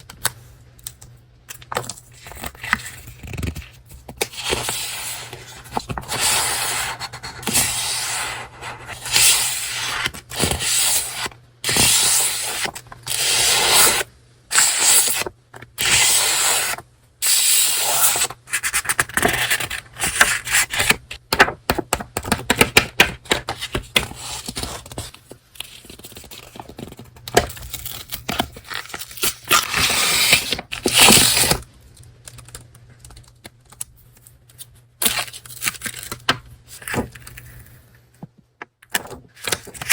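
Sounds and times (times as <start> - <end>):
paper rustling and scraping: 1.8 - 16.8, 23.3 - 31.6.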